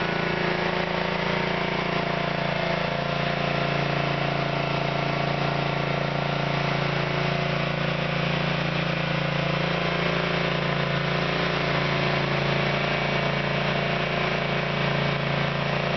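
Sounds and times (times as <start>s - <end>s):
gas engine running steadily: 0.0s - 15.9s.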